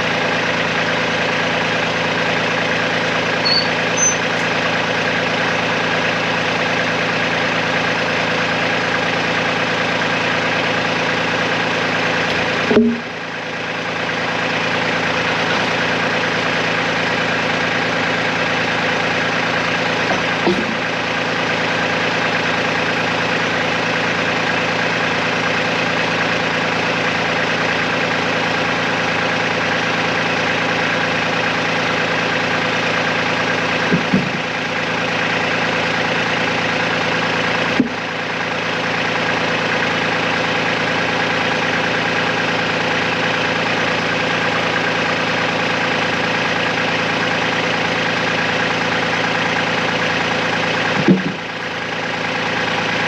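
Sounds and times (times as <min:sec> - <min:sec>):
tractor engine running: 0:00.0 - 0:53.0
sharp knock: 0:12.7 - 0:13.1.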